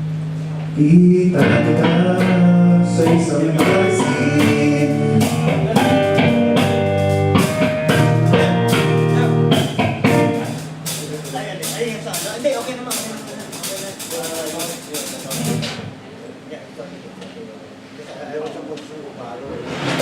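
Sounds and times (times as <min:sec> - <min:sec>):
guitar plucked and strummed: 0:01.1 - 0:10.8.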